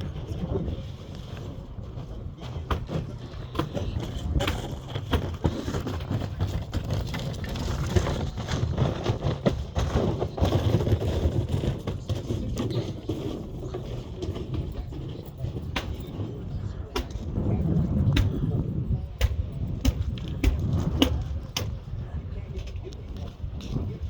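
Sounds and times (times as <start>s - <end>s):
scattered knocks and clatter: 1.1s - 21.9s
steady low rumble: 6.1s - 24.0s.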